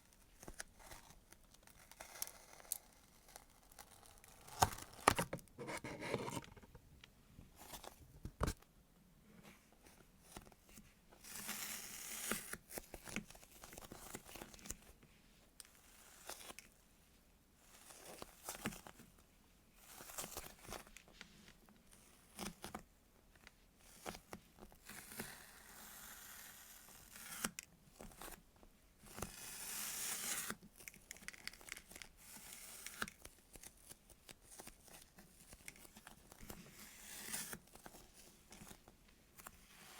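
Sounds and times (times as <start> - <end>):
squishy toys crinkling and rustling: 29.0 - 39.9.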